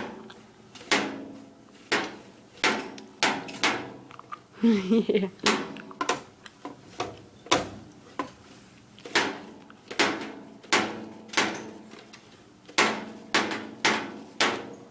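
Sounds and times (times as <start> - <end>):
child banging an object: 12.8 - 14.7.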